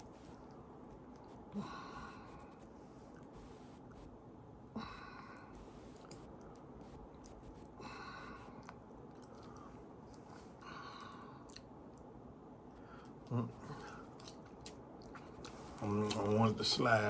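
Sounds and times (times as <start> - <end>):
person chewing a cracker: 8.3 - 12.1, 12.8 - 16.4.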